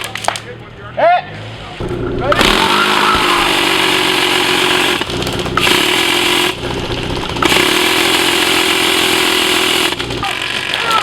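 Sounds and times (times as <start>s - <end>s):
mechanical hum: 1.3s - 11.0s
automatic airsoft fire: 2.3s - 11.0s.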